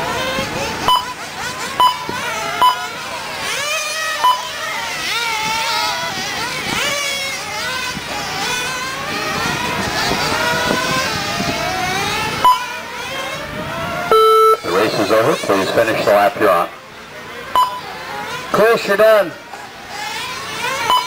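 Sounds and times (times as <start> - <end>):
rc car engines revving: 0.0 - 21.0
short electronic beep: 0.9 - 1.2, 1.8 - 2.9, 4.2 - 4.6, 12.4 - 12.7, 14.1 - 14.7, 17.6 - 17.9.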